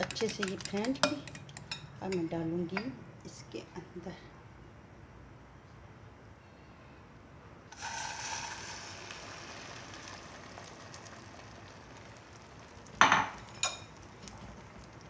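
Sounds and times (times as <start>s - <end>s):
mixture sizzling in hot oil: 7.7s - 15.0s.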